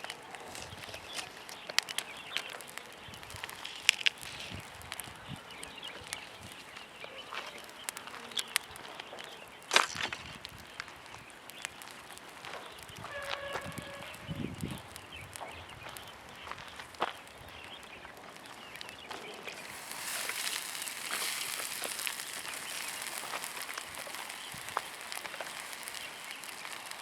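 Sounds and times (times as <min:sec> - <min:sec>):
sharp crackles: 0:00.0 - 0:27.0
match heads flaring and fizzing: 0:19.5 - 0:27.0.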